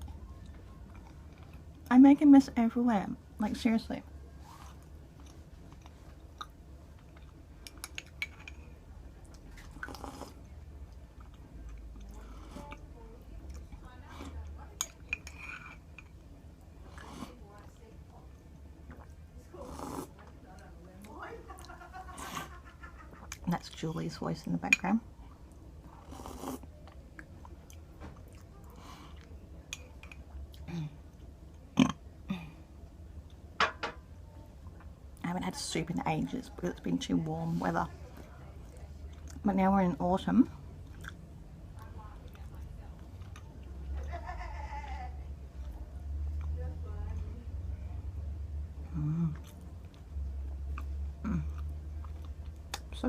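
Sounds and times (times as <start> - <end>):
person chewing food: 4.5 - 16.2, 25.2 - 31.9, 40.8 - 41.2, 49.0 - 53.0
person chewing: 9.2 - 10.4, 40.8 - 41.2, 49.0 - 52.9
wet mouth clicks: 50.7 - 53.0.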